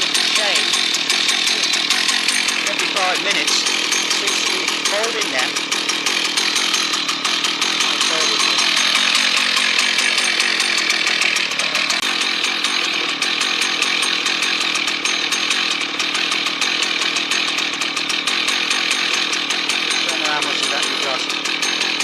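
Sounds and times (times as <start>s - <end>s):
chainsaw cutting wood: 0.0s - 22.0s.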